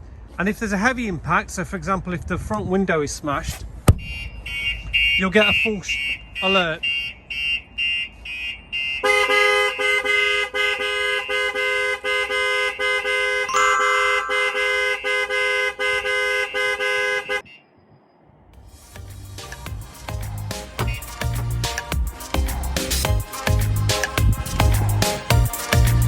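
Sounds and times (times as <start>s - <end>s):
vehicle alarm short beeps: 4.0s - 6.2s.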